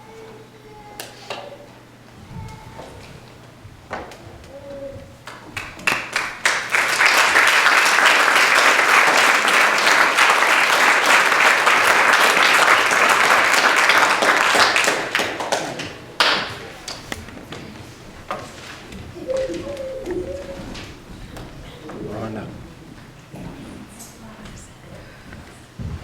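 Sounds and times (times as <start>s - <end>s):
audience applauding: 5.2s - 17.1s, 19.1s - 22.4s.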